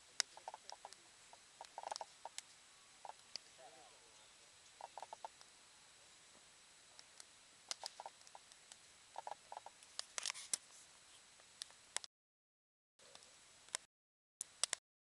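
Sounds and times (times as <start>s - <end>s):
campfire crackling: 0.0s - 12.0s.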